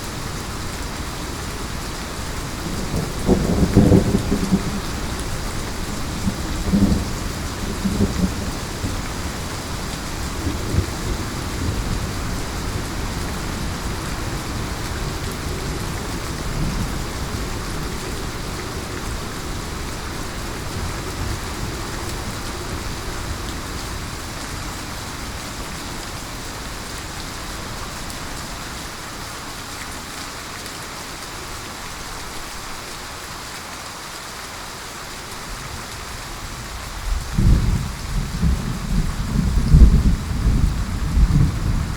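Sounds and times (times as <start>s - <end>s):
heavy rain pouring: 0.0s - 41.9s
thunder rumbling: 2.0s - 25.6s, 37.1s - 41.9s.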